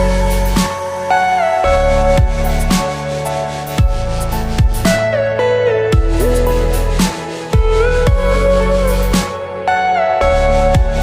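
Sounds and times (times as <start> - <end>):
soft melodic music with deep bass: 0.0 - 11.0.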